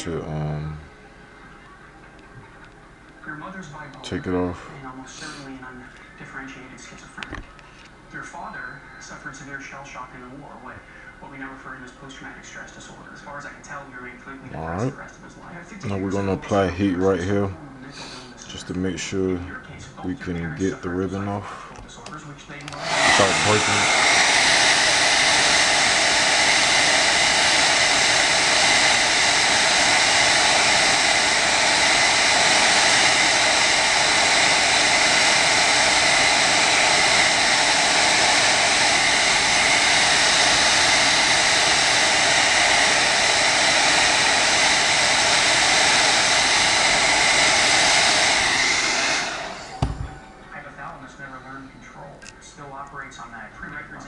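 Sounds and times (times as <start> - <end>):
hair dryer blowing: 22.7 - 50.6.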